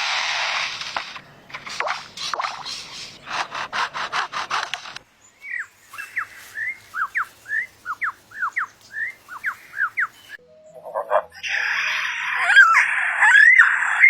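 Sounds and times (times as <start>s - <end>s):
bird harsh rasping notes: 0.8s - 10.4s.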